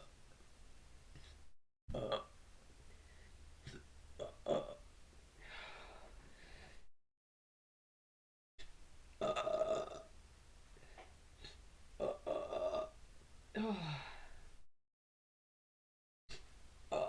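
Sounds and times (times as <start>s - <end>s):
woman burping loudly: 1.9s - 2.3s, 3.7s - 4.8s, 9.2s - 10.1s, 12.0s - 13.0s.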